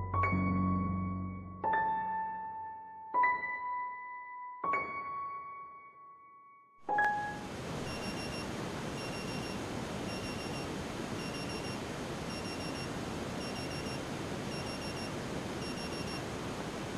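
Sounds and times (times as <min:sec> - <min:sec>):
steady hiss: 0:07.1 - 0:16.9
piezo buzzer beeps: 0:07.8 - 0:16.2.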